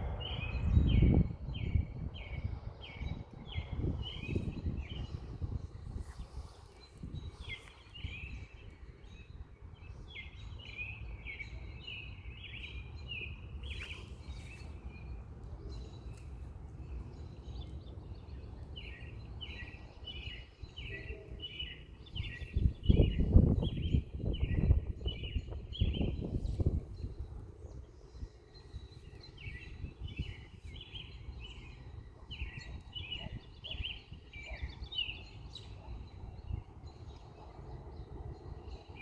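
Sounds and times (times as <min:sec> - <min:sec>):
birds chirping: 0:00.0 - 0:39.0.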